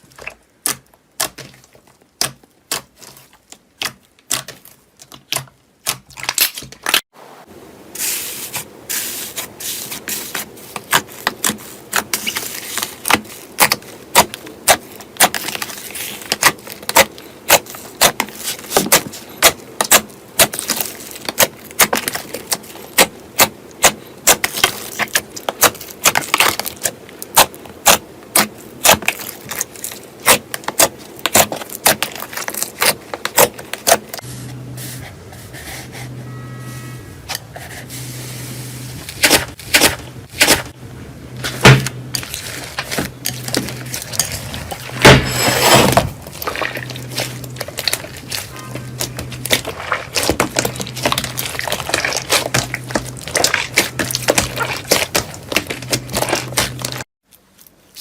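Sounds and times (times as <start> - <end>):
slime popping and crackling: 46.2 - 57.0.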